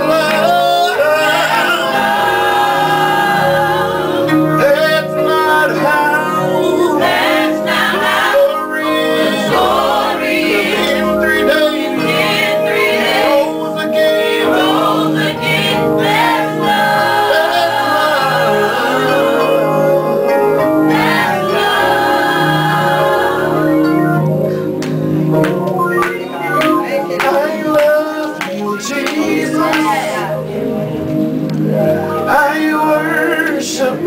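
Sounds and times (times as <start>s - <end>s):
choir singing gospel music: 0.0s - 24.8s, 25.7s - 34.0s.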